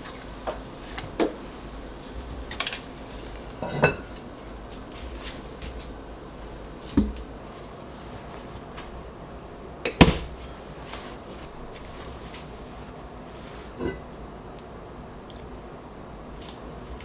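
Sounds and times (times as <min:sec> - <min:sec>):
dishes and utensils clinking: 0:02.5 - 0:04.3, 0:13.8 - 0:14.0.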